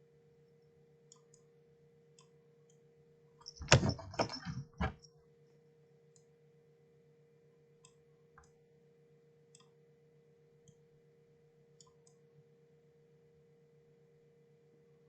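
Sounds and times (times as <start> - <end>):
low electrical hum: 0.0 - 15.0
mouse and keyboard clicks: 3.5 - 5.0.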